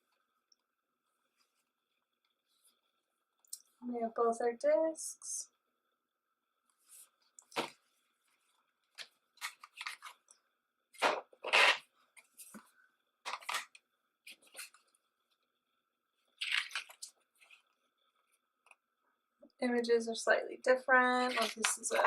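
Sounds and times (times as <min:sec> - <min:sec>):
plastic cd cases rustling: 0:07.4 - 0:10.4, 0:11.0 - 0:14.9, 0:16.4 - 0:17.7, 0:21.3 - 0:22.0.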